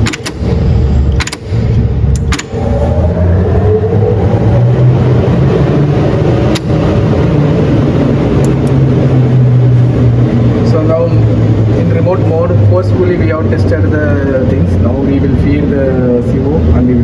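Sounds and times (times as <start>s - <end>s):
sharp clicks: 0.0s - 2.6s
ventilation fans humming: 0.0s - 17.0s.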